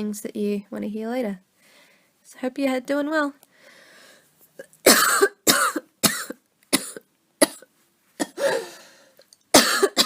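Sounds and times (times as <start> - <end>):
woman coughing: 4.8 - 8.8, 9.5 - 10.0.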